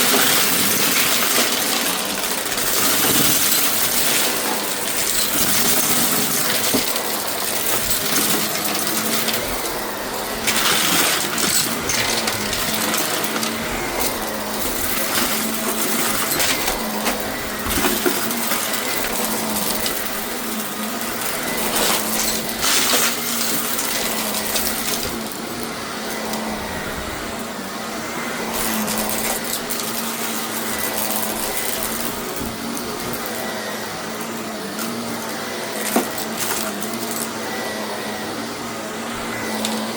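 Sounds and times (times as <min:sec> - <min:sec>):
rattling bursts: 0:00.0 - 0:27.4
vacuum cleaner running: 0:00.0 - 0:39.9.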